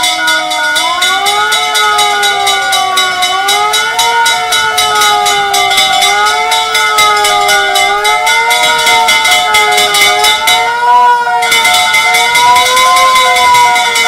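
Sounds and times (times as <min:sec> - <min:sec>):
fire bell ringing rapidly: 0:00.0 - 0:14.0
fire engine siren wailing: 0:00.0 - 0:14.0.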